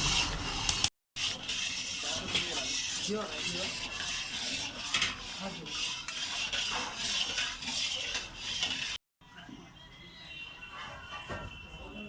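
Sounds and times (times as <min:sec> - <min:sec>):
metal utensil scraping a pot: 0:00.0 - 0:09.0.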